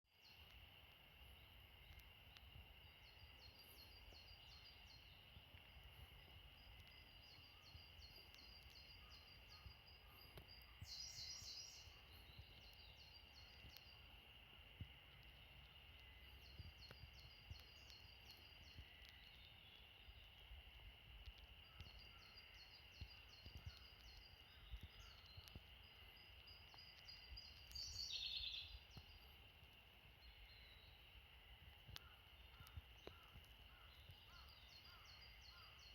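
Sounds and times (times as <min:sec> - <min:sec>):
songbird singing high notes: 0:27.7 - 0:28.8.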